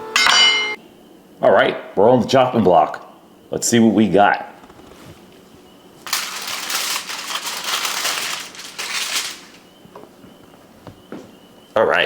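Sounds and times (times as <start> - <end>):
wrapping crinkling: 6.0 - 9.7.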